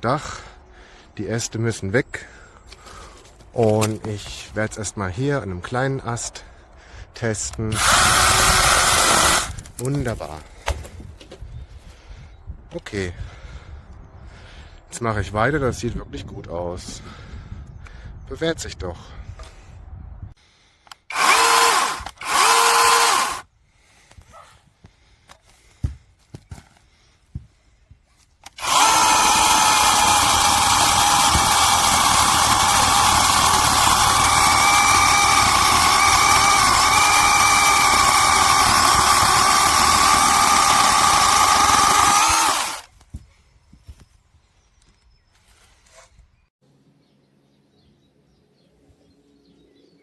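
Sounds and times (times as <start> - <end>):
mini chainsaw motor whining: 7.7 - 9.7, 20.9 - 23.4, 28.4 - 42.9.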